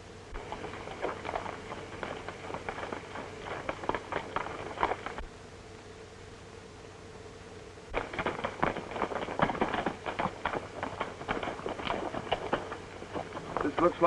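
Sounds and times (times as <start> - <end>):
old film soundtrack hiss and hum: 0.0 - 14.0
horse hooves clip-clopping: 0.3 - 5.2, 7.9 - 14.0.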